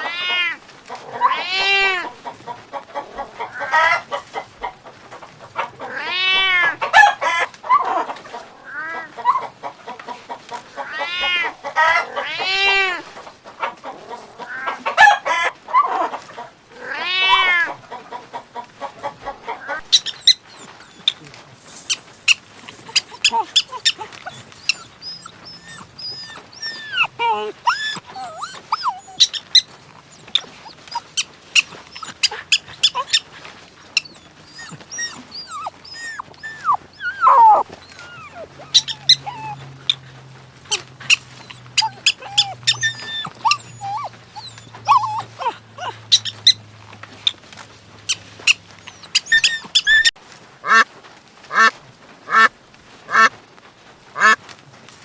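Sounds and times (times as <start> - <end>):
dogs yelping and whining: 19.7 - 50.2.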